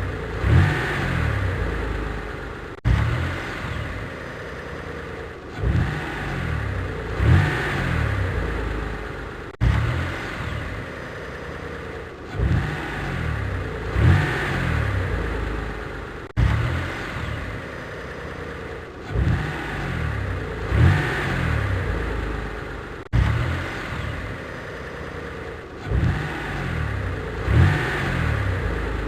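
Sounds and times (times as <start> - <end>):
car engine idling and revving: 0.0 - 29.0.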